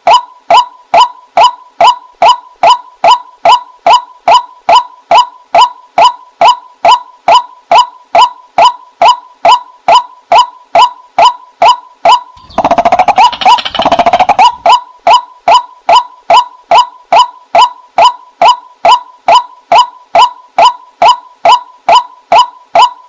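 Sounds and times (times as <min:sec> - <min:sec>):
bird calling kwak: 0:12.1 - 0:14.8.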